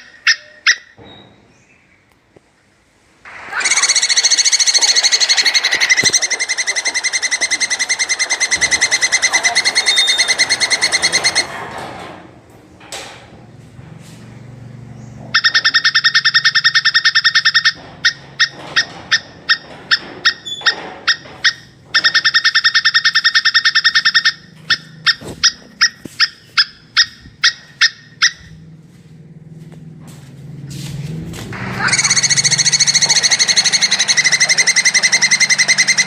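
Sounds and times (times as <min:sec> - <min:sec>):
squirrel chattering trill: 0:03.5 - 0:11.5, 0:15.4 - 0:28.5, 0:31.8 - 0:36.0.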